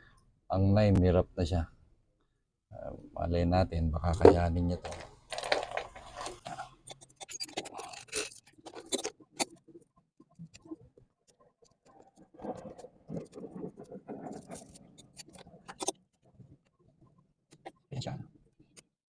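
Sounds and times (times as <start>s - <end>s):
clicks and scraping of metal bicycle parts: 4.2s - 9.6s, 14.4s - 16.0s.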